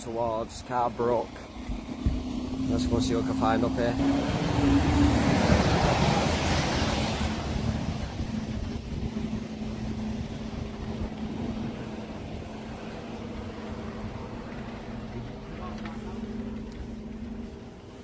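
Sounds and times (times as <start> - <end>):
steady low hum: 0.0 - 18.0
wind rumbling on microphone: 1.1 - 18.0.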